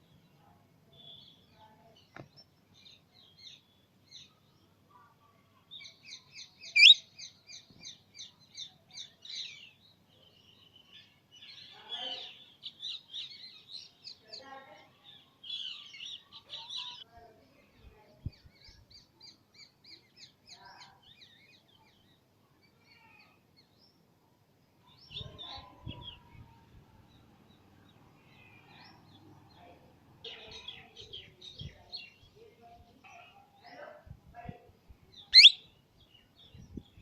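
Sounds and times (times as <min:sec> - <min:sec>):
baby parrot chirping: 0:06.7 - 0:07.0, 0:35.4 - 0:35.6.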